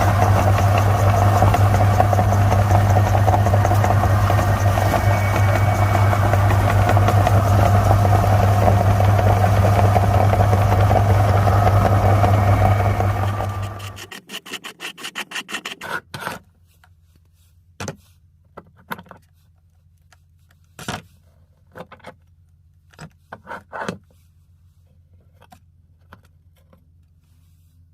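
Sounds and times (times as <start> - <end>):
meat grinder scraping and knocking: 0.0 - 16.3
quick run of clicks: 12.6 - 16.0.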